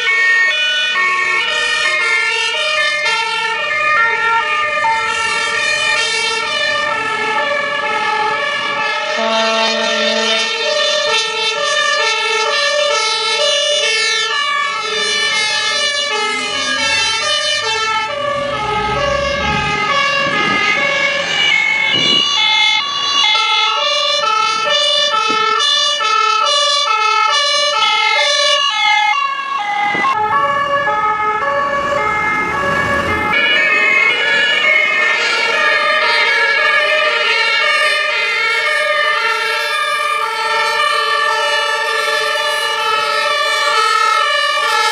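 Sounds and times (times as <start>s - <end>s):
fire truck siren two-tone: 0.0s - 44.9s
heavy vehicle rumble: 2.8s - 26.0s, 28.4s - 44.9s.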